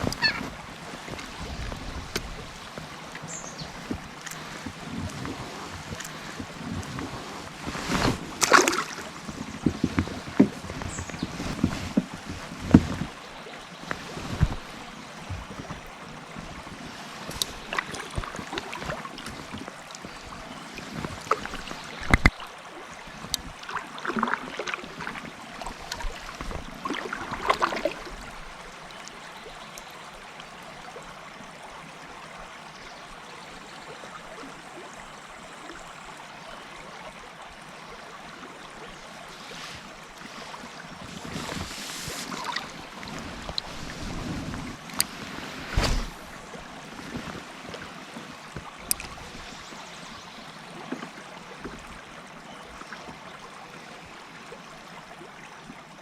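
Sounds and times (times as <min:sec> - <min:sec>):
knocks and splashes: 0:00.0 - 0:28.7, 0:39.2 - 0:52.1
river water rushing: 0:00.0 - 0:32.4, 0:34.2 - 0:56.0.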